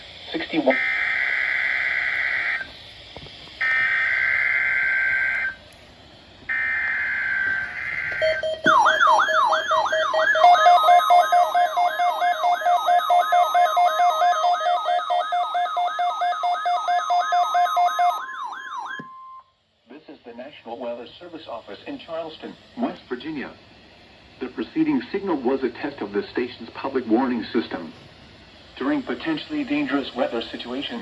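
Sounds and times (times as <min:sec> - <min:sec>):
warbling siren-like alarm: 0:00.7 - 0:02.7, 0:03.6 - 0:05.6, 0:06.5 - 0:19.5
screeching digital data bursts: 0:06.6 - 0:18.2.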